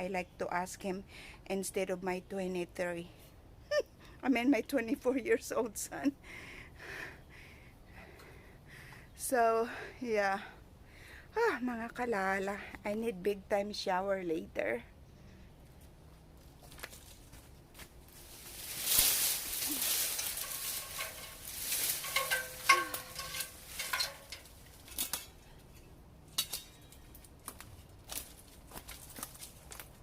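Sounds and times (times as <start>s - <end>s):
tree branches rustling: 15.8s - 30.0s.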